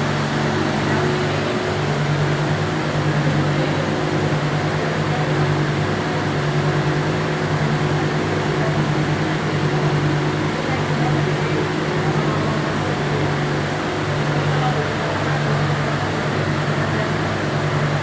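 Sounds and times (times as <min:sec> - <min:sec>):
machinery humming and rushing: 0:00.0 - 0:18.0.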